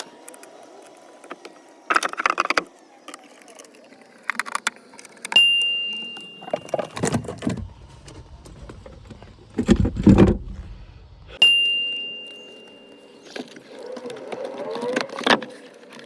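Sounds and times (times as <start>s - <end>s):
sharp ringing ding: 5.4s - 6.5s, 11.4s - 13.1s.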